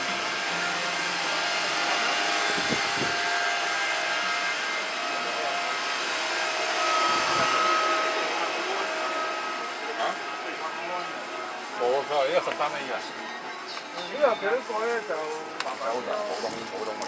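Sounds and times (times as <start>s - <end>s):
ventilation rushing noise: 0.0s - 13.3s.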